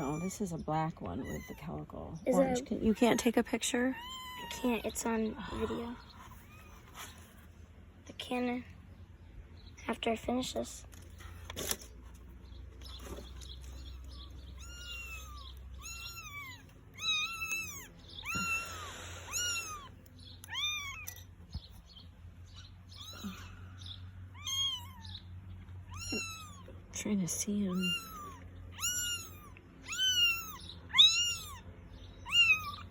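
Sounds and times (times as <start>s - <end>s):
kittens mewing: 0.0s - 7.2s, 13.6s - 21.4s, 22.5s - 32.9s.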